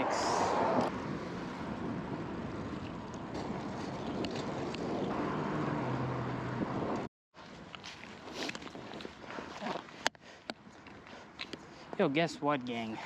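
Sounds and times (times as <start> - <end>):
vehicle engine hum passing: 0.0 - 7.1
road and traffic noise: 0.0 - 13.0.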